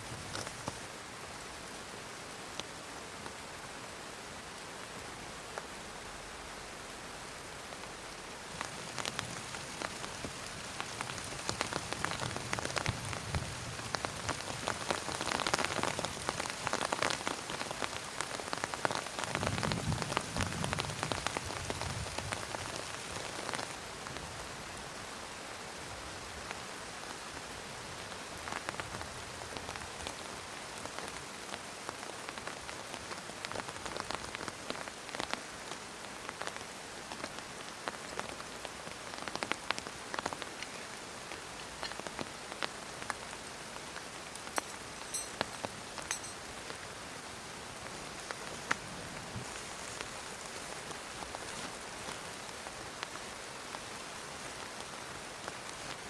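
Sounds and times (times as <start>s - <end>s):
heavy rain falling: 0.0s - 56.0s
raindrops tapping: 44.0s - 46.4s.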